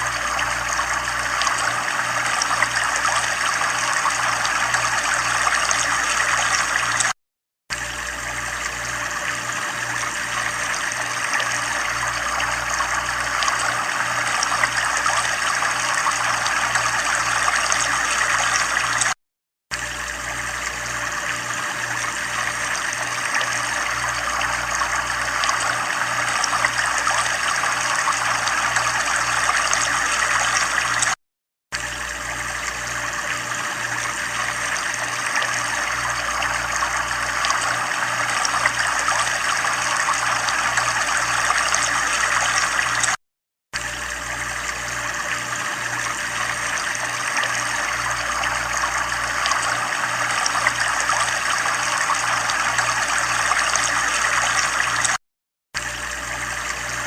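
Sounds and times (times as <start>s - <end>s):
low pulsing hum: 0.0s - 7.0s, 7.7s - 19.2s, 19.8s - 31.1s, 31.8s - 43.1s
water trickling: 0.0s - 31.2s, 31.8s - 43.2s, 43.8s - 55.2s.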